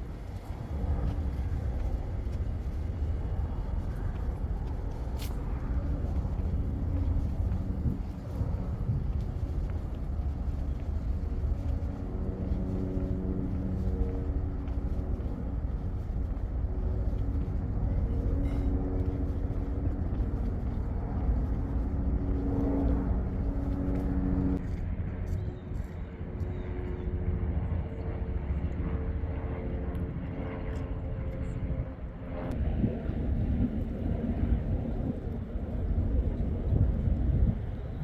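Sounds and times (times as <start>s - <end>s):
low rumble: 0.0s - 24.7s.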